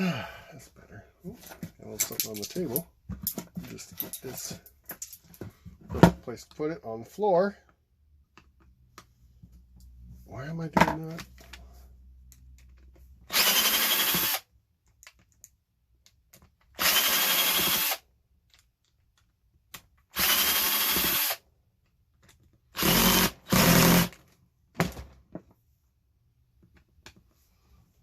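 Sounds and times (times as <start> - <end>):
power drill running in bursts: 13.3 - 14.4, 16.8 - 18.0, 20.2 - 21.4, 22.8 - 24.1.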